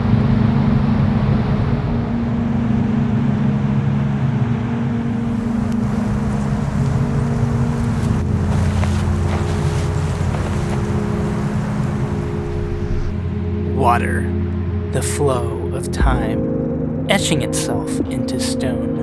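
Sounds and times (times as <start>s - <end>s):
low steady tones: 4.8s - 18.2s.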